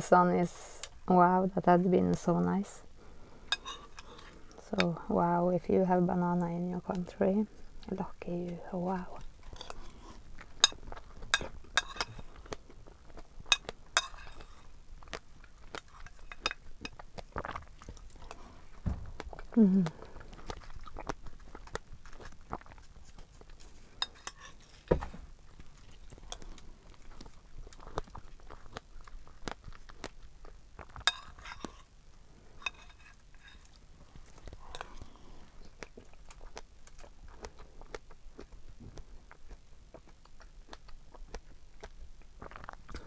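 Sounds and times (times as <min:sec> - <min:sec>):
soft chewing: 0:02.8 - 0:05.0, 0:06.4 - 0:43.0
cutlery clinking against dish: 0:03.5 - 0:04.2, 0:10.6 - 0:12.2, 0:13.5 - 0:14.6, 0:24.0 - 0:25.0, 0:32.6 - 0:33.7.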